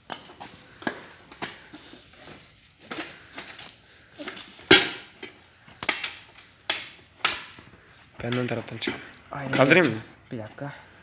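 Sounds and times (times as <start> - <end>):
metal tools clanking: 0.0 - 1.0.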